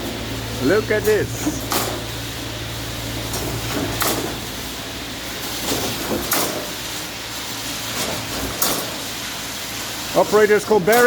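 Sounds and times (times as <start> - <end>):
pump clanking: 0.0 - 11.0
pump engine hum: 0.0 - 11.0.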